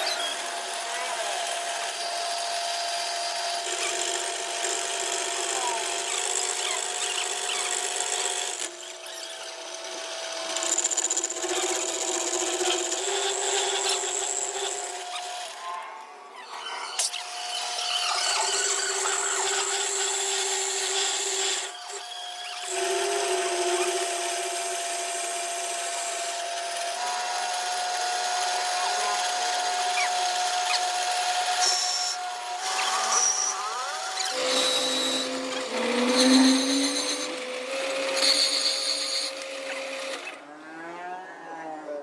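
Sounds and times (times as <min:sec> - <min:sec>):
power tool machining metal: 0:00.0 - 0:40.4.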